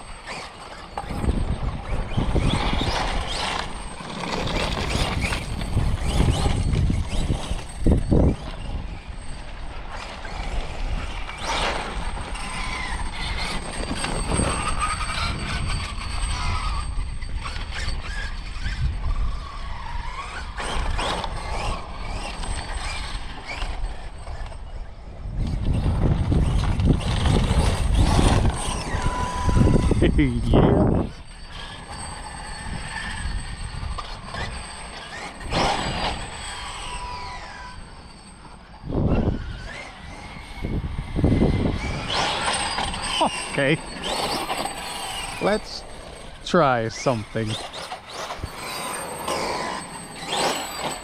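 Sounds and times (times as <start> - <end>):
rc truck motor whine: 0.0 - 51.0
tires on dirt: 0.0 - 51.0.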